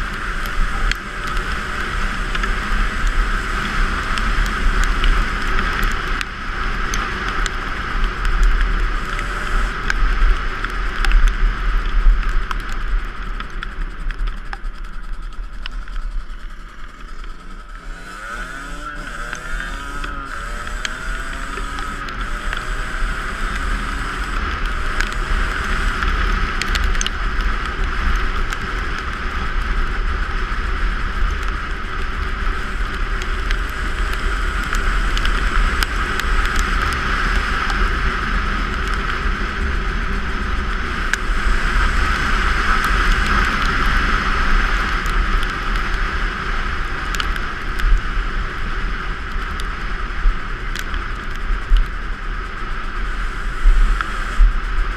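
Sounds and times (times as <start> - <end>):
dirt bike engine revving: 0.0 - 10.5, 16.4 - 28.4, 31.8 - 38.7
wind rumbling on microphone: 0.0 - 54.9.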